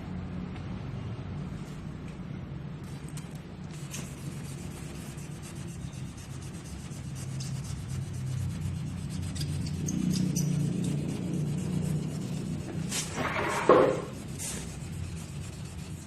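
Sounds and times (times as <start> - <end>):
low steady hum: 0.0 - 16.0
sandpaper sanding strokes: 3.7 - 16.0.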